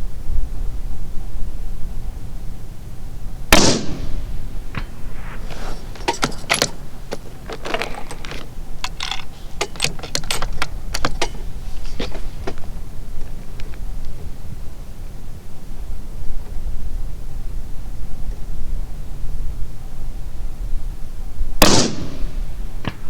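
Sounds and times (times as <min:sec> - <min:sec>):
rifle shot: 0:03.5 - 0:08.2, 0:21.6 - 0:23.0
rifle bolt clicking and rattling: 0:03.6 - 0:12.7.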